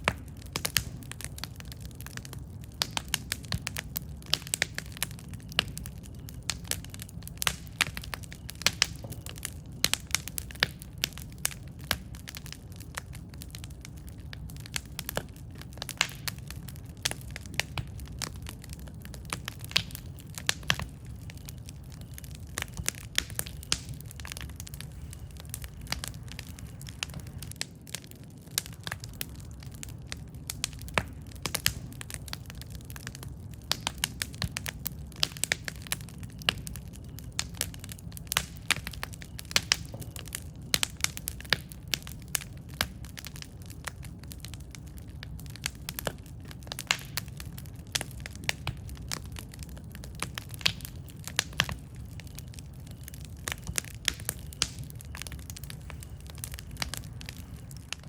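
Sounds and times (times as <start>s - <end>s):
campfire crackling and popping: 0.0s - 58.0s
low fire rumble: 0.0s - 58.0s.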